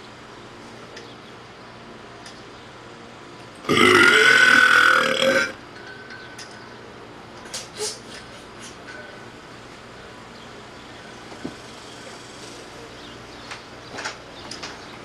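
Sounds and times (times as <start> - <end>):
long belch: 3.7 - 5.6.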